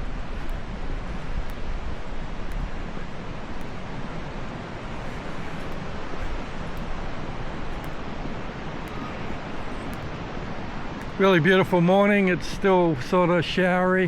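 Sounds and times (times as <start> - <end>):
wind buffeting microphone: 0.0 - 13.9
waterfall roaring: 0.0 - 14.0.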